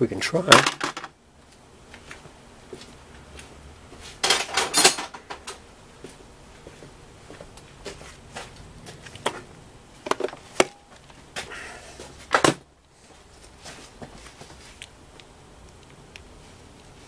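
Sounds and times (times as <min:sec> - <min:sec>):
hand tools clicking and knocking: 0:00.5 - 0:01.1.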